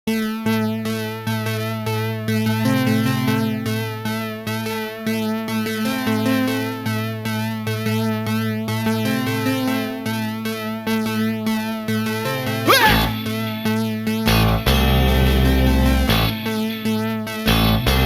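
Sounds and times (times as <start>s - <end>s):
bass line: 12.7s - 13.6s, 14.3s - 16.5s
synthesizer chords: 12.8s - 13.6s.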